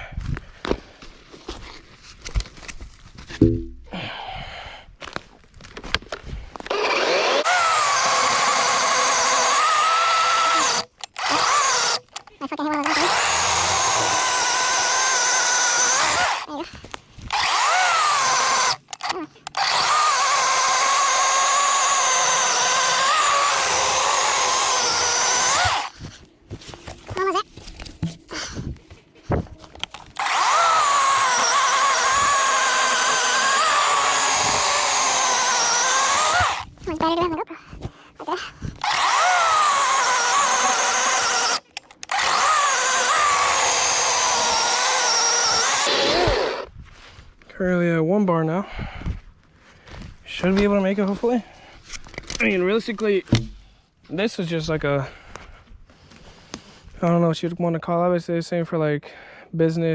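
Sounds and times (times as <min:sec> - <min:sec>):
electric chainsaw whining: 0:06.6 - 0:12.2, 0:12.8 - 0:16.5, 0:17.3 - 0:26.0, 0:29.8 - 0:36.7, 0:38.8 - 0:46.7.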